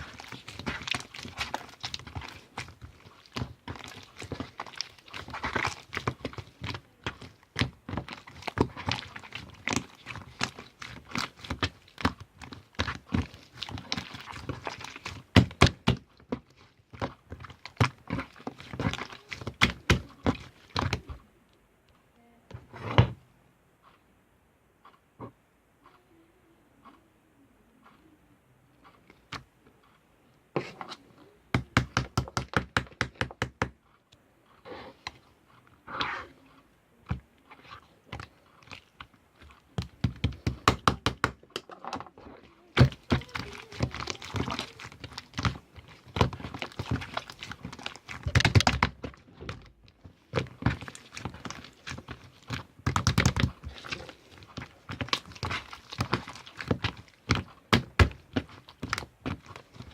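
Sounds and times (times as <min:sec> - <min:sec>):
slime squished by hand: 0:00.0 - 0:21.2, 0:34.5 - 0:59.9.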